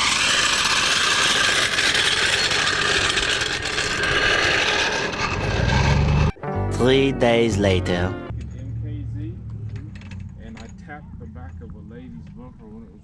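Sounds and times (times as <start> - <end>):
floor jack wheels rattling and scraping: 0.0 - 6.3.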